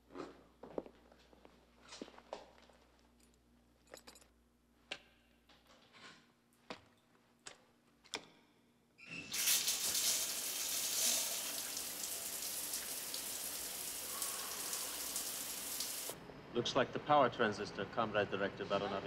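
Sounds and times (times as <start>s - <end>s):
steady hiss: 9.4s - 16.2s.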